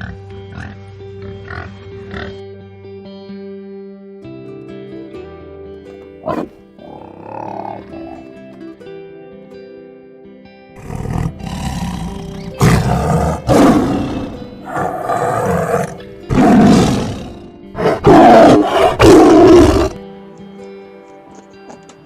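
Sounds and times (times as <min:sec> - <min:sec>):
soft background music: 0:00.0 - 0:22.0
animal roaring: 0:06.2 - 0:08.3, 0:10.8 - 0:20.0.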